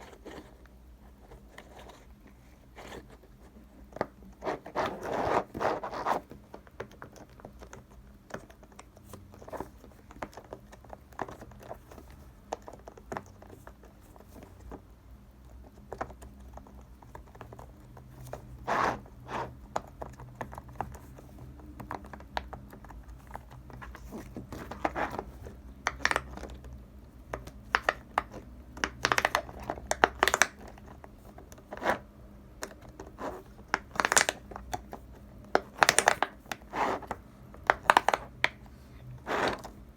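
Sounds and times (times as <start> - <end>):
handling scratches: 4.4 - 6.4, 33.0 - 39.9.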